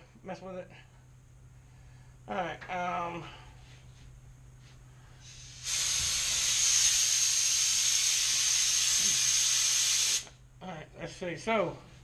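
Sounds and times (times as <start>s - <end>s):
air blow gun whistling blast: 5.3s - 10.3s.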